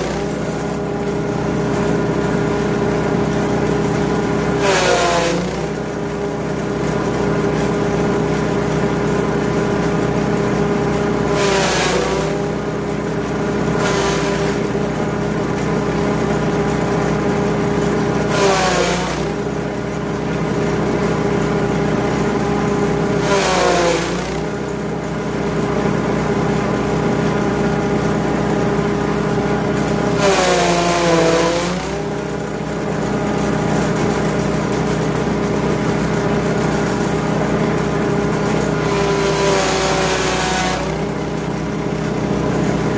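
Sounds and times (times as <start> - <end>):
grass chopper petrol engine running: 0.0 - 42.9
material being chopped: 11.4 - 12.5, 13.8 - 14.7, 18.4 - 19.3, 30.2 - 32.1.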